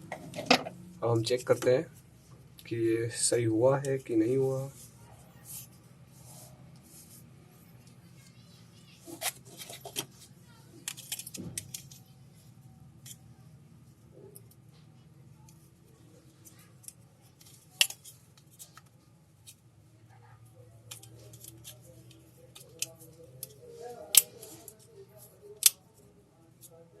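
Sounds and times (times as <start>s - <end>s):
faint low hum: 0.0s - 27.0s
small parts clicking and tapping: 9.1s - 12.1s, 16.4s - 19.6s, 20.8s - 26.0s.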